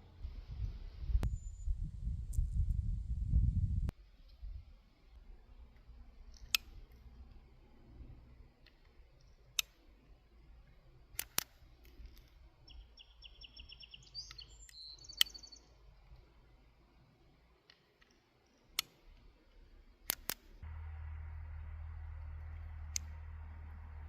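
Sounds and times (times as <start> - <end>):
sharp clicks: 8.6 - 9.8, 11.1 - 12.4, 14.1 - 15.4, 17.6 - 19.2, 20.0 - 21.0, 22.1 - 23.9
bird chirping in trills: 12.6 - 15.8.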